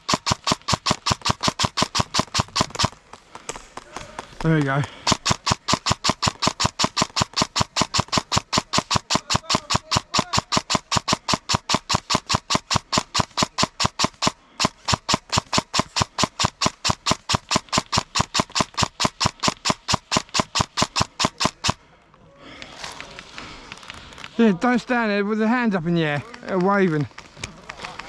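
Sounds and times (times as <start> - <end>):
rapid regular clicking: 0.0 - 21.8.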